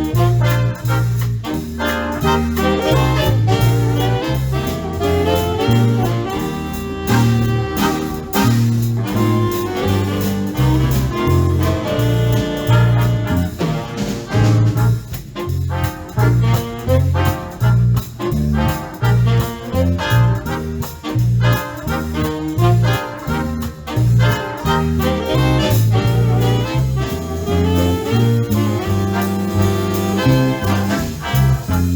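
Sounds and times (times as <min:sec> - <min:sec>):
big band playing swing: 0:00.0 - 0:31.9.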